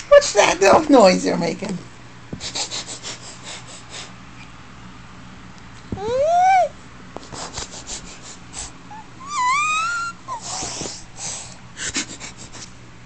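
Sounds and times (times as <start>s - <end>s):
dog whining: 6.0s - 6.8s, 8.9s - 10.7s.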